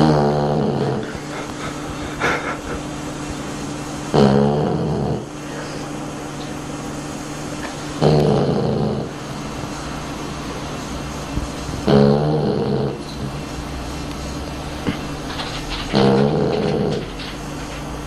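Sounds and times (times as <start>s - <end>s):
dog snoring: 0.0s - 5.9s, 7.6s - 9.5s, 11.4s - 17.8s.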